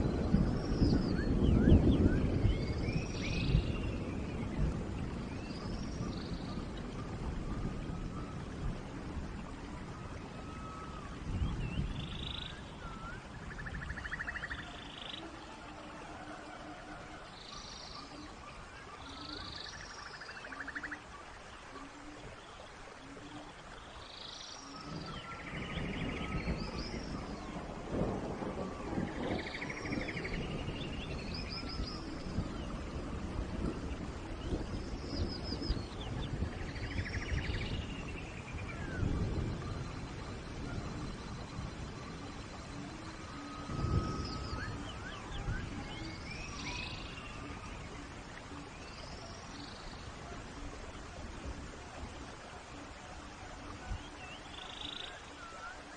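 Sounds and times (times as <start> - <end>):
rain hissing: 0.0 - 55.9
songbirds singing: 0.0 - 55.9
swooping whistles: 12.5 - 14.8, 42.8 - 48.0.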